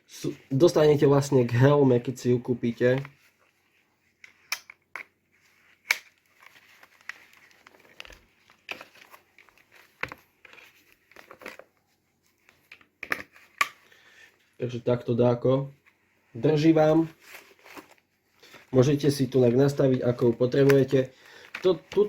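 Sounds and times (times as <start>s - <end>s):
rustling: 5.2s - 13.6s, 15.7s - 22.0s.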